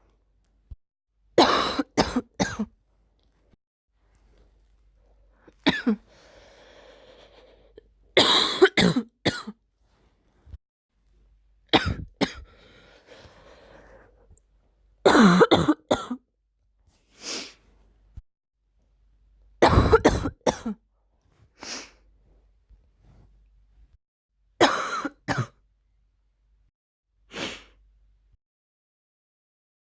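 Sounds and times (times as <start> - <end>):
person coughing: 1.4 - 2.7, 5.6 - 6.0, 8.2 - 9.5, 11.8 - 12.5, 15.1 - 16.2, 19.6 - 20.8, 24.6 - 25.6
breathy inhaling: 6.0 - 7.8, 12.4 - 14.2.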